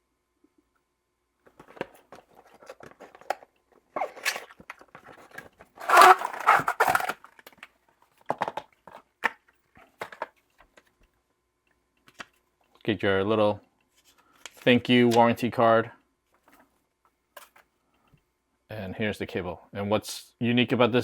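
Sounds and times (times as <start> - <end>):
cardboard box rustling: 5.1 - 7.2.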